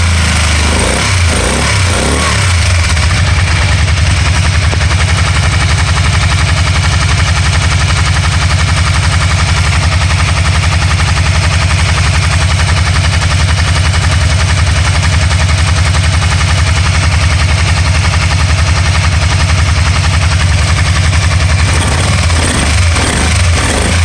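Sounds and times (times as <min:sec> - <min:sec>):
engine running and misfiring: 0:00.0 - 0:24.0.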